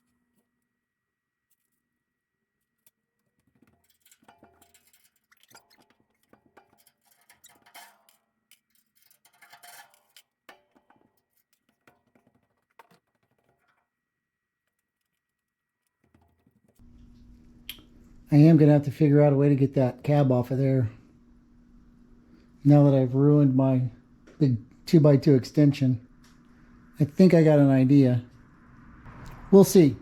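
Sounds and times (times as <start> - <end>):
faint clicking and rattling: 2.7 - 18.3
faint high-pitched hum: 16.8 - 30.0.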